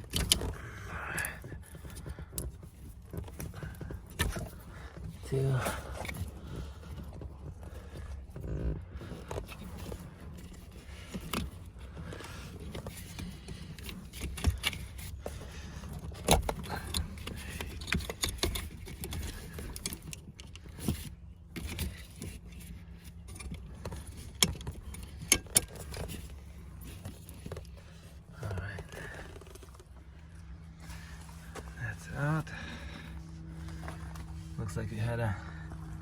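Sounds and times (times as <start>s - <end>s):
low steady hum: 0.0s - 36.0s
metallic clicks and scrapes: 8.0s - 30.0s.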